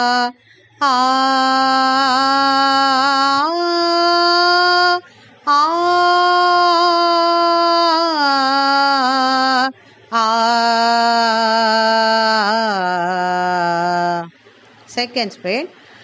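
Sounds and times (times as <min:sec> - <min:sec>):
solo voice singing vowel: 0:00.0 - 0:14.3.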